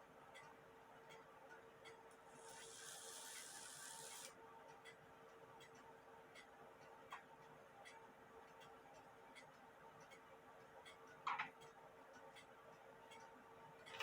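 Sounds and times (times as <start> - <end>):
brief hiss: 2.4 - 4.3.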